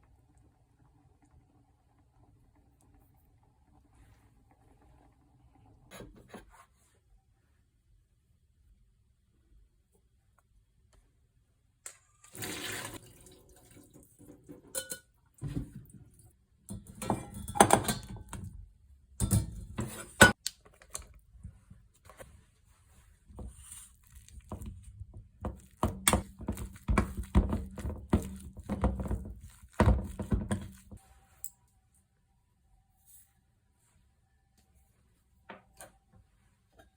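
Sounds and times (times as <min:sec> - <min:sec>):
water splashing and gushing: 0:12.3 - 0:14.0.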